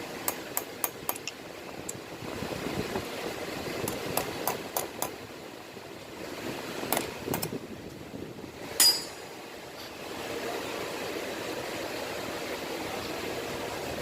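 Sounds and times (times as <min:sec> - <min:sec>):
metal tools clinking: 0:08.8 - 0:09.3.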